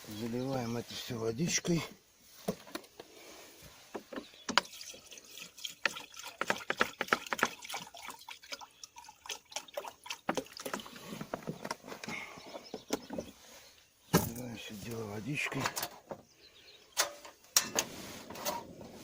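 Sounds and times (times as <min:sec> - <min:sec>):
water pouring into a pot: 0:04.6 - 0:11.0.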